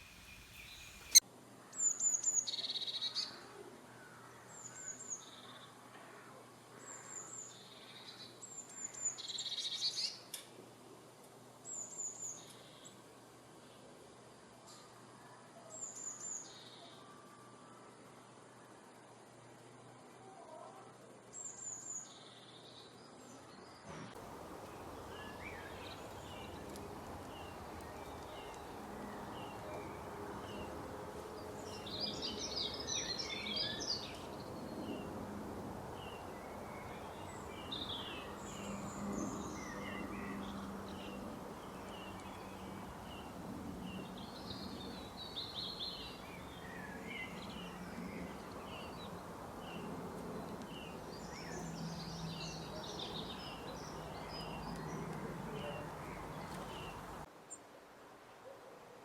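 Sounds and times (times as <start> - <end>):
birds twittering rapidly: 0.0 - 1.2, 21.4 - 57.3
small birds chirping: 0.0 - 3.4, 21.4 - 57.6.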